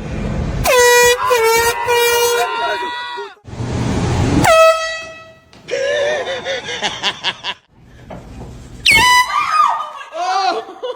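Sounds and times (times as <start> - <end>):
air horn blast: 0.6 - 2.9, 4.4 - 5.5, 8.9 - 9.4
people laughing: 5.7 - 7.7, 9.8 - 10.9.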